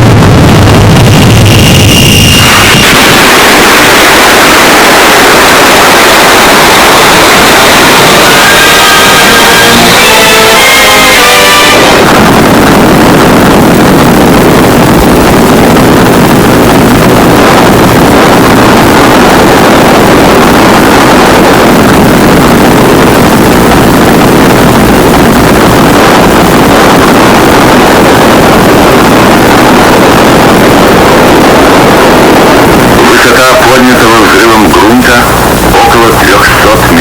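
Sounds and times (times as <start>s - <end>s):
explosion rumbling roar: 0.0s - 37.0s.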